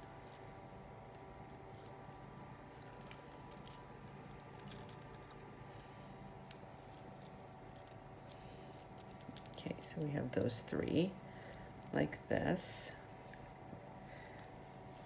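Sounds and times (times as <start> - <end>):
faint steady hum: 0.0 - 15.0
metal charms and chain clinking: 1.1 - 5.9, 6.7 - 10.0.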